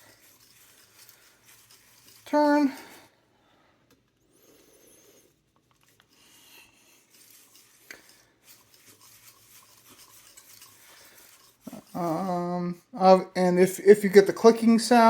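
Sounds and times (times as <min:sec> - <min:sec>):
ribbon spool rubbing and clicking: 0:00.0 - 0:03.1, 0:03.9 - 0:12.6.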